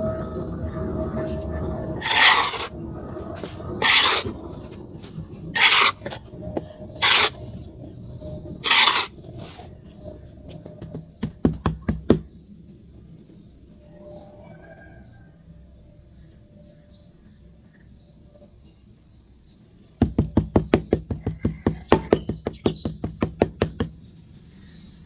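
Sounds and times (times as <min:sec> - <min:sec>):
charcoal scraping: 0:02.0 - 0:11.4.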